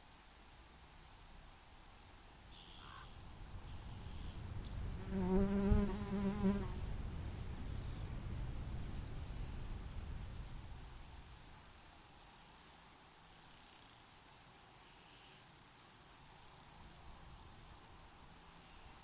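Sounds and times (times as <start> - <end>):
flying insect buzzing: 5.0 - 7.0
crickets chirping: 6.5 - 19.0.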